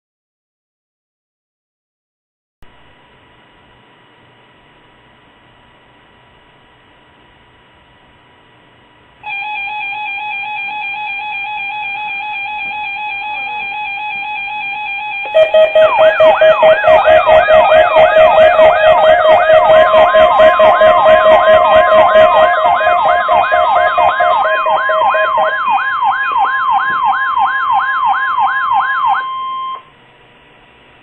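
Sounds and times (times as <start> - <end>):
faint steady electronic tone: 9.2 - 26.9, 27.5 - 30.1
loud steady electronic tone: 9.2 - 29.9
pulsing siren-like alarm: 9.2 - 29.9.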